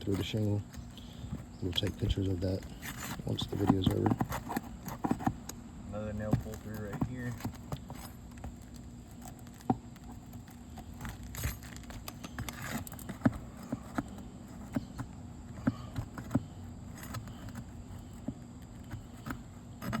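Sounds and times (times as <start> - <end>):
metal scraping under shingles: 0.0 - 20.0.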